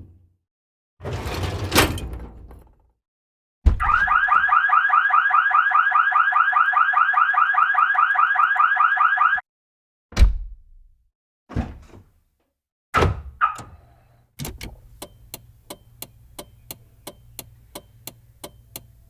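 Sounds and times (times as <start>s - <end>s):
fast pulsing electronic alarm: 3.8s - 9.4s.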